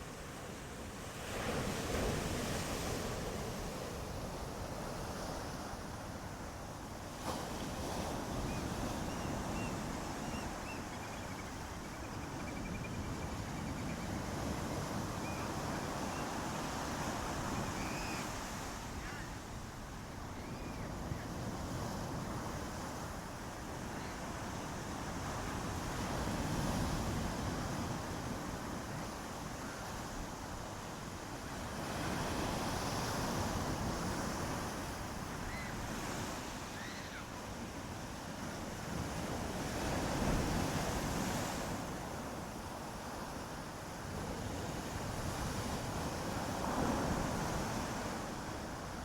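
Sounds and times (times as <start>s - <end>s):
ocean waves on shore: 0.0s - 49.0s.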